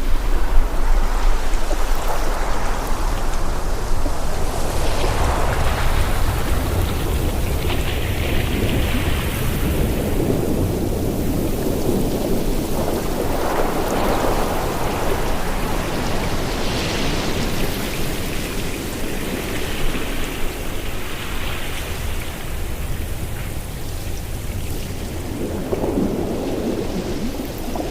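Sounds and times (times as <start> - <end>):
ocean waves rushing: 0.0 - 27.9.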